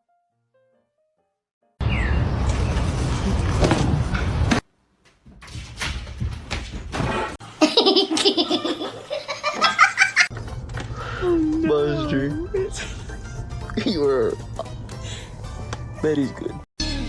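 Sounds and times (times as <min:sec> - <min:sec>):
person laughing hard: 0:07.6 - 0:10.3.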